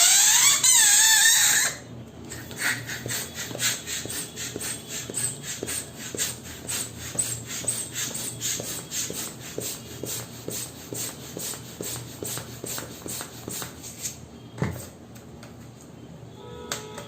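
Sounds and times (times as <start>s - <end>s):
rhythmic airy puffs: 2.5s - 14.1s.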